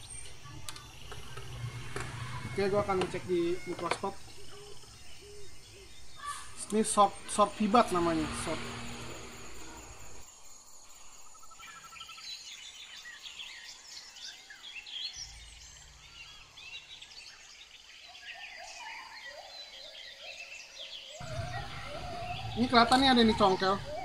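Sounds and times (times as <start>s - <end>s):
low hum: 0.0s - 10.3s
birds chirping: 0.0s - 24.0s.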